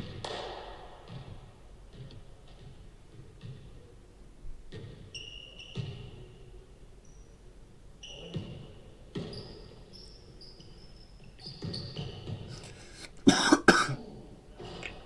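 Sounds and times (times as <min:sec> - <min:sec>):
man coughing: 0:12.5 - 0:14.0.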